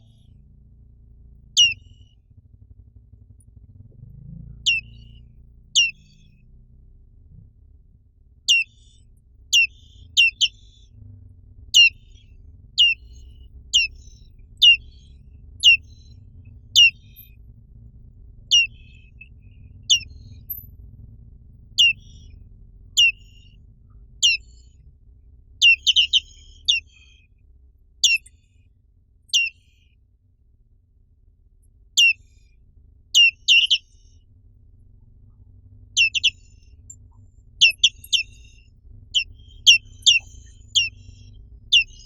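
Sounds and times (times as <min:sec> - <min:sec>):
faint low hum: 0:00.0 - 0:42.0
bird calls sweeping downward: 0:01.6 - 0:02.0, 0:04.6 - 0:05.2, 0:05.8 - 0:06.3, 0:08.5 - 0:08.9, 0:09.5 - 0:10.9, 0:11.7 - 0:12.2, 0:12.8 - 0:16.2, 0:16.8 - 0:17.3, 0:18.5 - 0:20.6, 0:21.8 - 0:22.4, 0:23.0 - 0:23.5, 0:24.2 - 0:24.6, 0:25.6 - 0:27.1, 0:28.0 - 0:28.3, 0:29.3 - 0:29.7, 0:32.0 - 0:32.2, 0:33.1 - 0:34.2, 0:36.0 - 0:37.0, 0:37.6 - 0:42.0.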